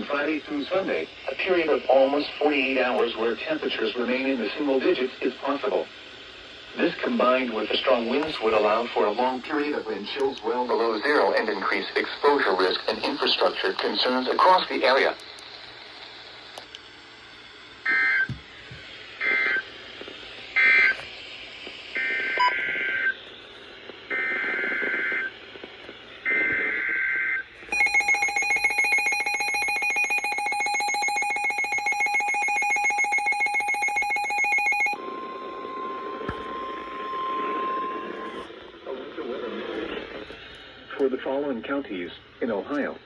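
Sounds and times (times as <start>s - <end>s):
steady tone over hiss: 0.0s - 30.6s, 33.1s - 43.0s
screechy data tones: 26.3s - 38.7s
harsh two-tone attention signal: 27.7s - 38.5s.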